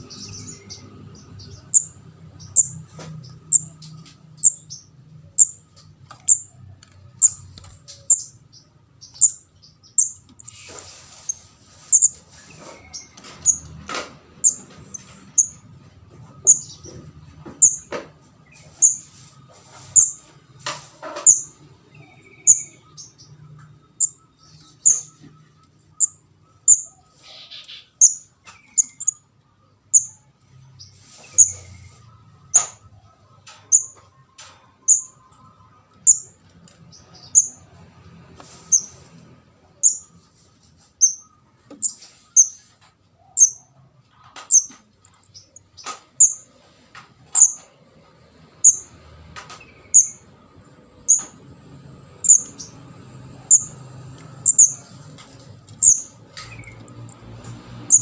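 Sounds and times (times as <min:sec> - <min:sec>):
young bird chirping: 0:00.0 - 0:06.6, 0:07.2 - 0:13.8, 0:14.4 - 0:17.0, 0:17.6 - 0:17.9, 0:18.5 - 0:20.3, 0:21.2 - 0:29.2, 0:29.9 - 0:30.2, 0:30.9 - 0:32.7, 0:34.9 - 0:35.4, 0:36.0 - 0:37.7, 0:39.8 - 0:43.8, 0:44.4 - 0:46.5, 0:47.3 - 0:47.7, 0:48.6 - 0:48.9, 0:49.5 - 0:50.3, 0:51.0 - 0:51.4, 0:52.2 - 0:57.1.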